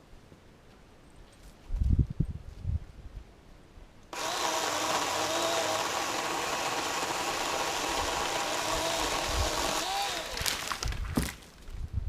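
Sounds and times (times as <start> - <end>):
chainsaw running: 4.2 - 11.0.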